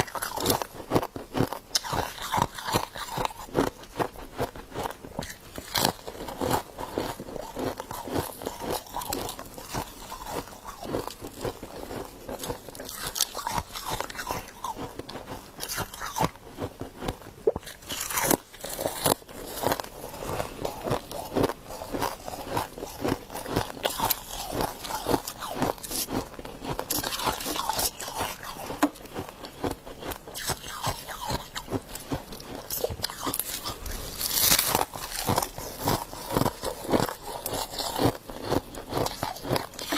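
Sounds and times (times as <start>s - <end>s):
crunching and chewing frost: 0.0s - 39.9s.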